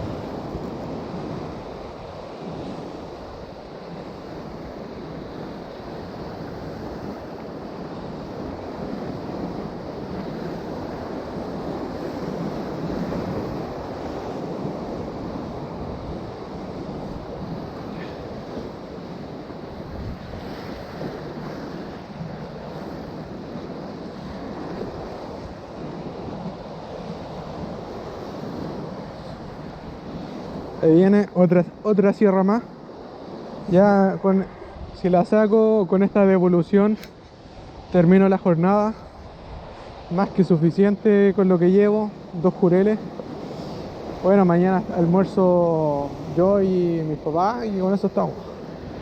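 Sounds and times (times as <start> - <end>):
surf washing against rocks: 0.0 - 49.0
wind buffeting microphone: 0.0 - 49.0.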